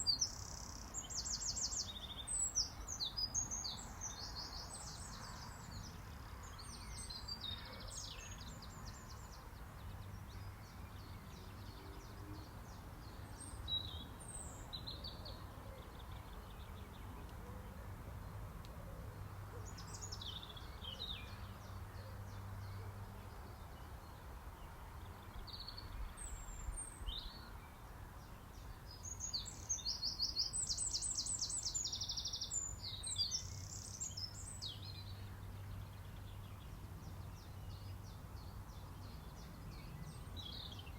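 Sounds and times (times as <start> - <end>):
songbirds chirping and trilling: 0.0 - 40.9.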